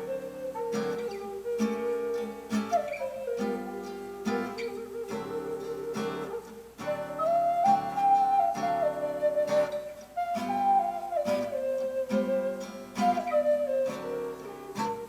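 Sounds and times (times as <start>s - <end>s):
flute melody: 0.0s - 15.0s
strummed acoustic guitar: 0.0s - 15.0s.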